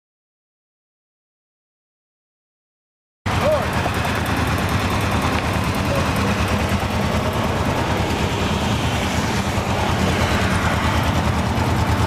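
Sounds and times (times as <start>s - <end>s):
motorcycle engine running: 3.3s - 12.0s.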